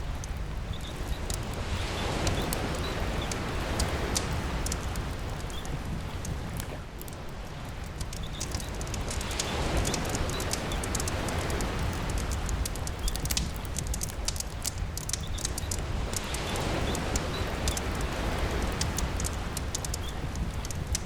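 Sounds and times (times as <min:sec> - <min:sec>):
campfire crackling and popping: 0:00.0 - 0:21.0
sea waves rumbling: 0:00.0 - 0:21.0
steady rain: 0:00.0 - 0:21.0.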